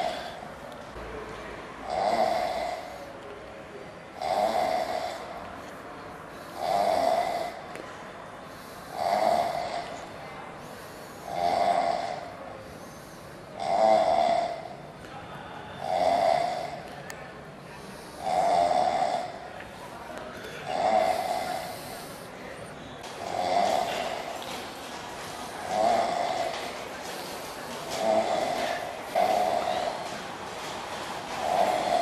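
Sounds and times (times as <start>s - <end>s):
man snoring loudly: 1.8s - 3.1s, 4.2s - 5.4s, 6.6s - 7.6s, 8.9s - 9.9s, 11.2s - 12.4s, 13.6s - 14.7s, 15.8s - 16.8s, 18.2s - 19.4s, 20.6s - 22.0s, 23.2s - 24.3s, 25.6s - 26.6s, 27.9s - 30.1s, 31.4s - 32.0s.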